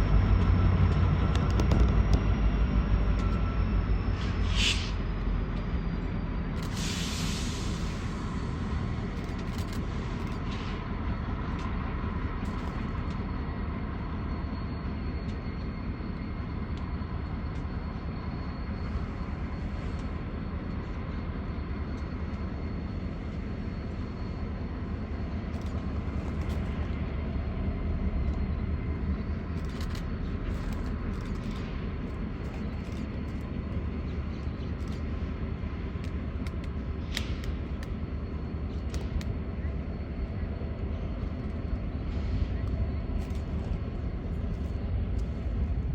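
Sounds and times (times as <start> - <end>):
moving vehicle rumble: 0.0 - 45.9.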